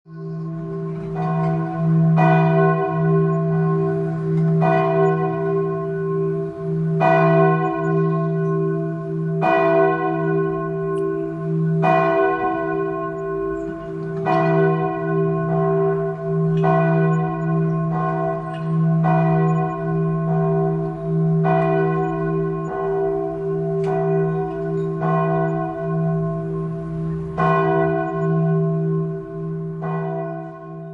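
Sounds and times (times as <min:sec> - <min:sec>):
church bell tolling: 0:00.1 - 0:30.9.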